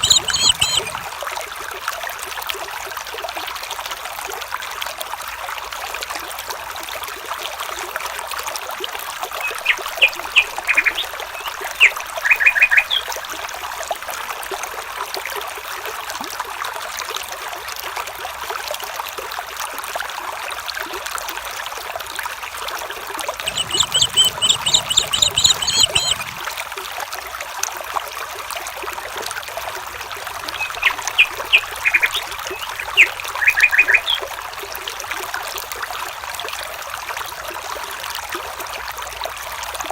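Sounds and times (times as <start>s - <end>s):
bird trilling: 0.0s - 1.1s, 9.4s - 13.0s, 23.4s - 26.5s, 30.4s - 34.3s
birds chirping: 0.0s - 1.1s, 9.4s - 13.0s, 23.4s - 26.5s, 30.4s - 34.3s
stream water trickling: 0.0s - 39.9s.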